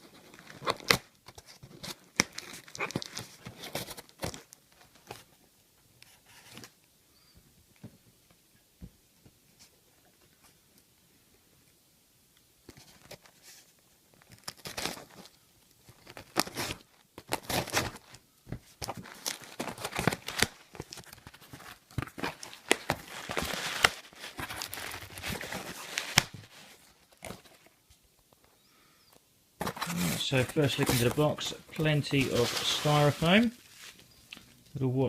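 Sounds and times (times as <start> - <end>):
cardboard and packing rustling: 0.0 - 6.8, 12.7 - 28.4, 29.6 - 34.2
tape tearing: 0.3 - 4.5, 14.2 - 15.3, 15.9 - 18.2, 18.8 - 27.7, 29.6 - 34.5.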